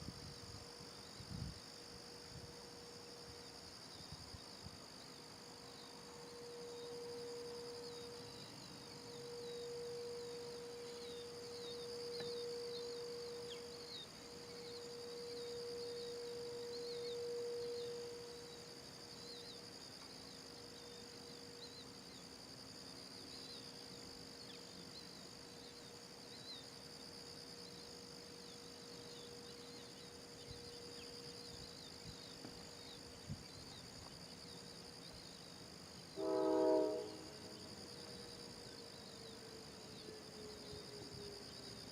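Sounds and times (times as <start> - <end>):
crickets chirping: 0.0 - 41.9
distant warning siren: 5.9 - 18.6.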